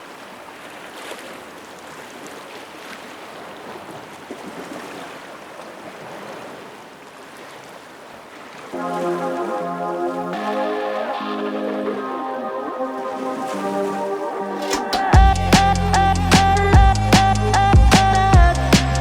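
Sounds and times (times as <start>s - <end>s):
sea water washing and splashing: 0.0s - 15.2s.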